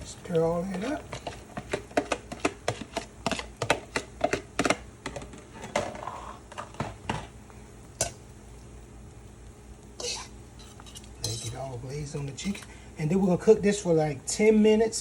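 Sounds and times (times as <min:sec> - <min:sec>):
utensil scraping a pan: 0:00.5 - 0:07.3, 0:10.0 - 0:12.8.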